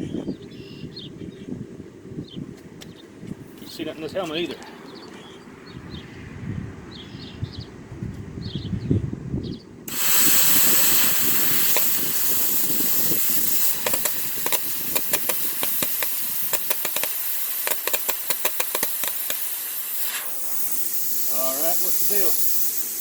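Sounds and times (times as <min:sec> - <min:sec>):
plasma cutter air hiss: 0:09.9 - 0:23.0
crackling arc clicks: 0:10.0 - 0:22.9.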